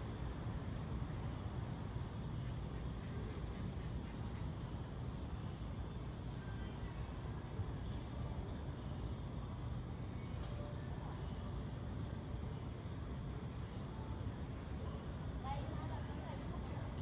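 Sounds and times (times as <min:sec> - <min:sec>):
crickets chirping: 0:00.0 - 0:17.0
faint click: 0:10.4 - 0:10.6.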